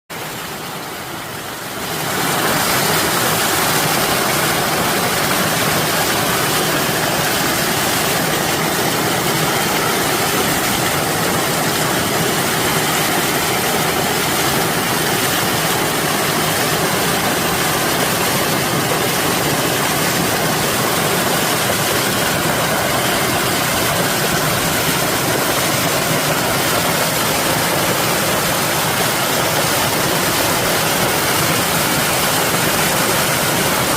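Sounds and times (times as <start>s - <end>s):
rushing water: 0.1s - 33.9s.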